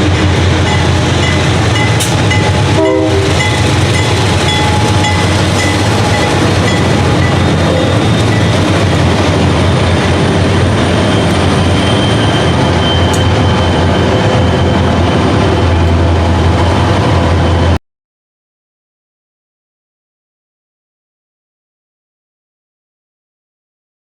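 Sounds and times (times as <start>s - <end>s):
freight train rumbling past: 0.0s - 17.8s.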